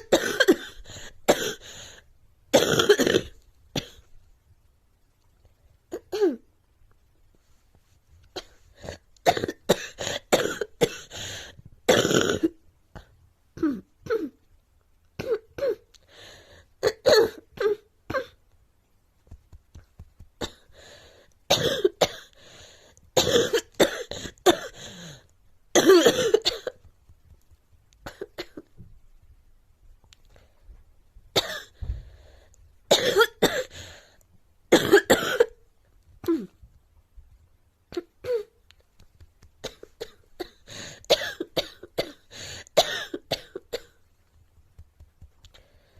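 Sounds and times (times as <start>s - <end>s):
girl coughing: 0.0s - 1.7s, 2.5s - 4.1s, 8.4s - 11.2s, 11.9s - 12.5s, 16.8s - 18.4s, 21.5s - 22.4s, 23.2s - 24.8s, 25.8s - 26.8s, 31.4s - 31.8s, 32.9s - 33.8s, 34.7s - 35.6s, 39.6s - 42.2s, 42.8s - 44.0s.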